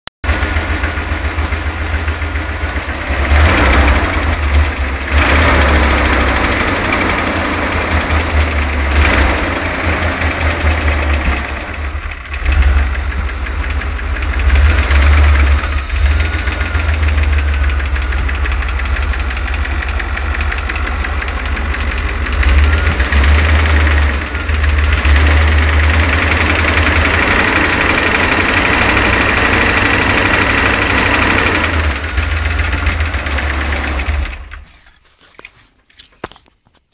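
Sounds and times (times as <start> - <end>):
van engine metallic knocking: 0.3 - 34.7.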